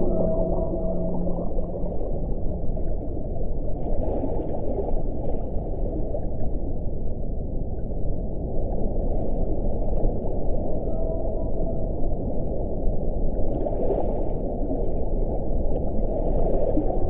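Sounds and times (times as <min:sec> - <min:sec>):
whale call: 0:00.0 - 0:03.1, 0:10.7 - 0:12.4
underwater low rumble: 0:00.0 - 0:17.0.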